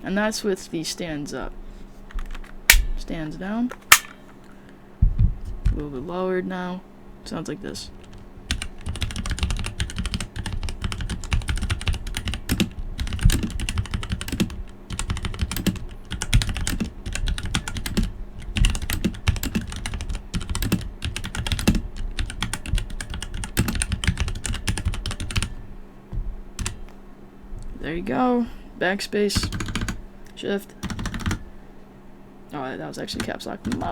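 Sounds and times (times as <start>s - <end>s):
mechanical keyboard typing: 8.0s - 25.6s, 26.6s - 26.8s, 29.4s - 30.0s, 30.8s - 31.4s, 33.1s - 33.9s.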